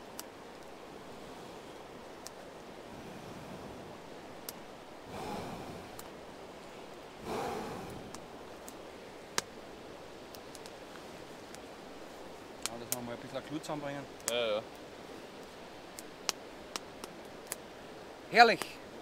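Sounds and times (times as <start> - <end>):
fire crackling: 0.0 - 19.0
breaths blown onto embers: 0.5 - 13.4.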